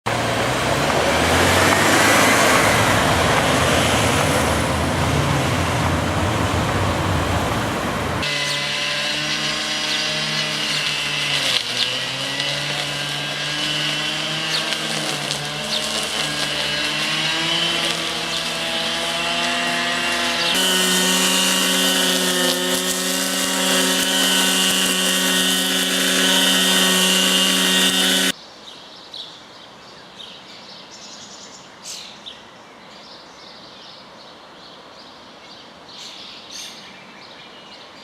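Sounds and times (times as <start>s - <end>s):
rumbling traffic: 0.1s - 28.3s.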